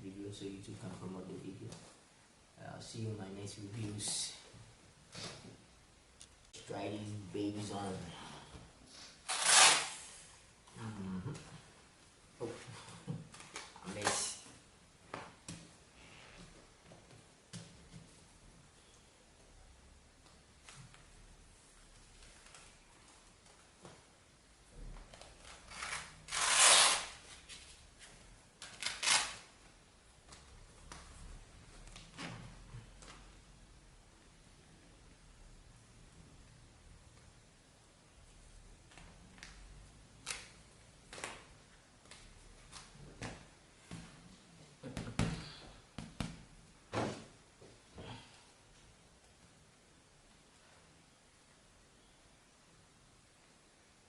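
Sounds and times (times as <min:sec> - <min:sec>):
velcro strap ripping: 0:09.2 - 0:10.1, 0:25.4 - 0:27.2, 0:28.6 - 0:29.5.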